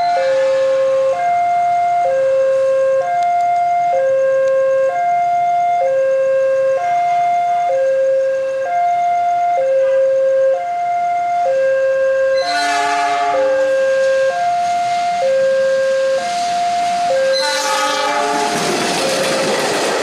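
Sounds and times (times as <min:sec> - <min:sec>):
train horn: 0:00.0 - 0:01.2, 0:12.3 - 0:15.0, 0:17.2 - 0:18.8
level crossing two-tone alarm: 0:00.0 - 0:20.0.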